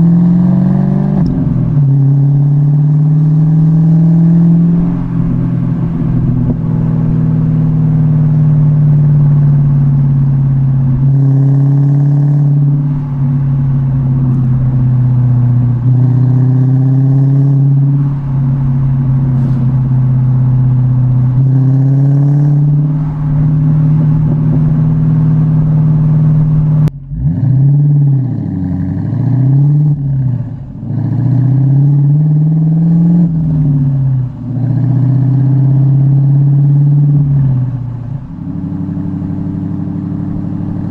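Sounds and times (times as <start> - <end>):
car engine droning: 0.0 - 40.9
exhaust crackles: 0.8 - 40.9.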